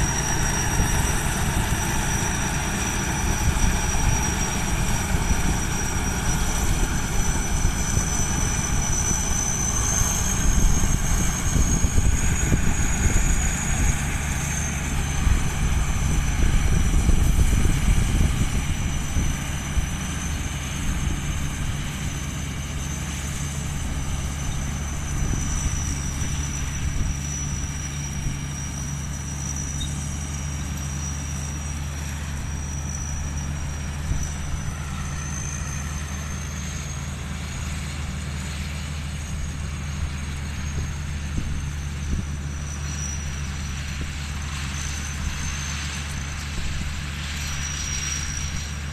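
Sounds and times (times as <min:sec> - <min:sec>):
wind buffeting microphone: 0:00.0 - 0:28.8, 0:39.2 - 0:47.5.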